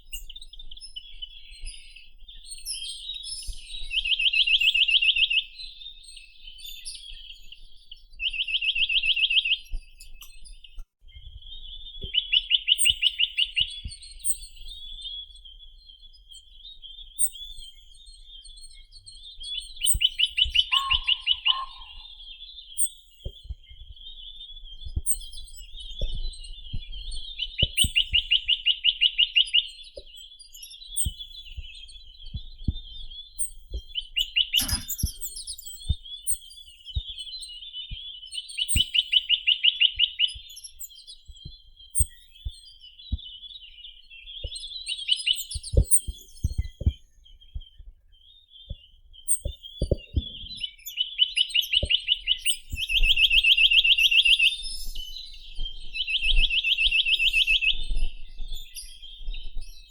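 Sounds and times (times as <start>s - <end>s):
bird singing fast trills: 19.7s - 23.1s, 49.3s - 59.9s
soft bird chattering: 19.9s - 22.3s, 34.3s - 35.8s.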